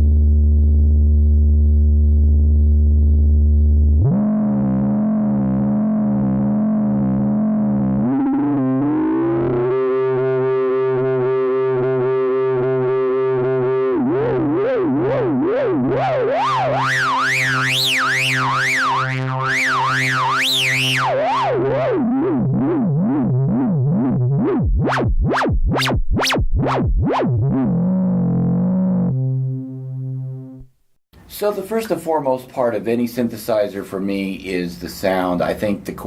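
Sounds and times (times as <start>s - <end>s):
low pulsing synth note: 0.0s - 30.7s
wavering synthesizer tone gliding: 7.4s - 26.4s
fast zigzagging synth sweep: 8.0s - 29.1s.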